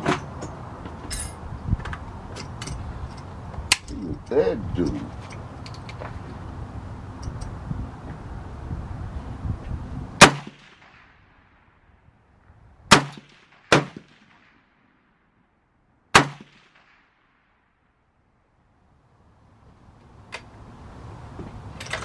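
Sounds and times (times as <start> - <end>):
rifle shots: 10.2 - 11.2, 12.9 - 14.7, 16.1 - 17.2.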